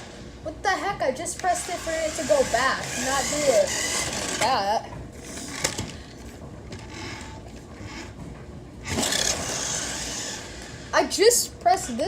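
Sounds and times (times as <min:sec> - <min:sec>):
toy car wheels scraping floor: 0:01.6 - 0:04.6, 0:08.9 - 0:10.8.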